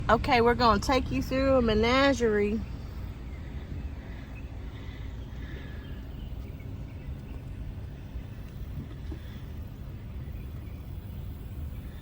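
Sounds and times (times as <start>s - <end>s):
car interior road rumble: 0.0s - 12.0s.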